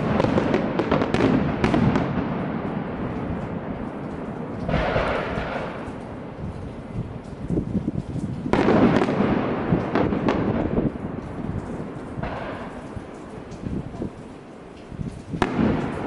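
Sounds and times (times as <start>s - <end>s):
sharp firework cracks: 0.0s - 6.6s, 8.5s - 13.8s, 15.3s - 16.0s
fireworks bursting: 0.0s - 16.0s.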